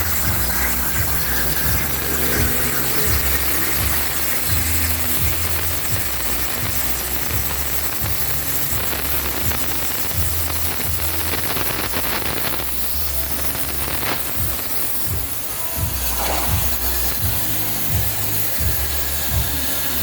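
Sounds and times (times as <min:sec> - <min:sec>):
router spindle cutting wood: 0:00.0 - 0:05.6.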